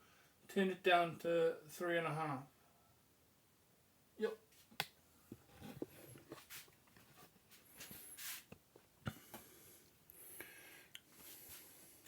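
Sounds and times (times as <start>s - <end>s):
soft hiss: 4.2s - 12.0s.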